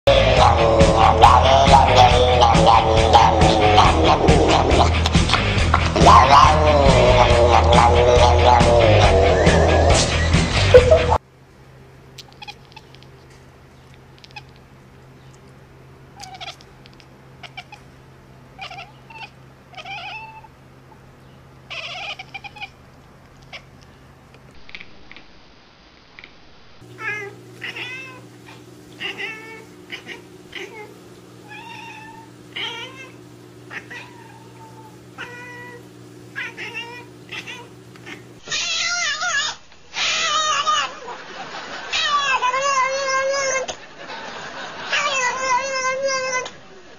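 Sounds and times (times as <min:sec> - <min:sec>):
steady low hum: 0:00.1 - 0:38.4
cat mewing: 0:06.0 - 0:09.9, 0:12.2 - 0:13.1, 0:16.2 - 0:17.9, 0:18.5 - 0:20.6, 0:21.7 - 0:23.8, 0:26.8 - 0:41.1, 0:41.9 - 0:43.7, 0:44.9 - 0:46.5.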